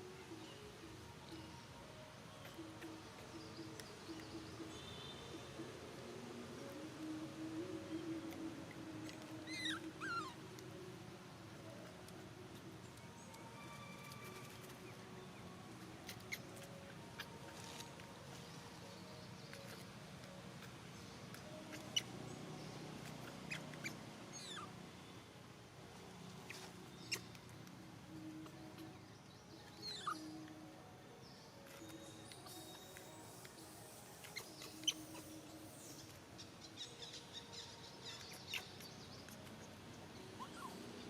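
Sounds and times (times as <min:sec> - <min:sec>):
baby monkey squeaking: 0:09.4 - 0:10.4, 0:21.7 - 0:22.1, 0:23.2 - 0:24.7, 0:29.8 - 0:30.3, 0:34.1 - 0:35.7, 0:38.1 - 0:38.8, 0:40.4 - 0:40.8
monkey whistle-like cries: 0:09.4 - 0:10.4, 0:23.5 - 0:24.7, 0:40.4 - 0:40.8.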